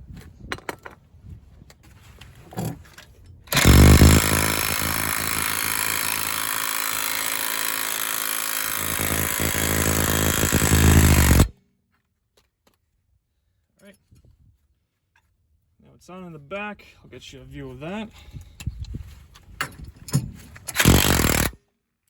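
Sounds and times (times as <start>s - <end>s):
impact wrench hammering: 3.5s - 11.5s, 20.8s - 21.5s.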